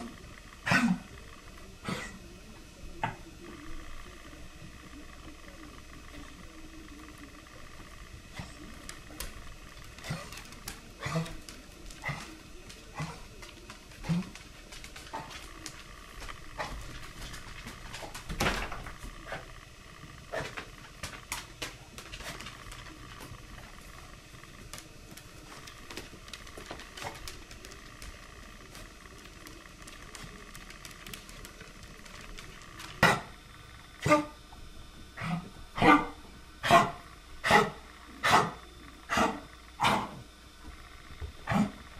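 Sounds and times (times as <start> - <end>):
pet coughing: 0.6 - 1.2, 1.8 - 2.2, 11.0 - 11.4, 35.2 - 40.2, 41.5 - 41.8.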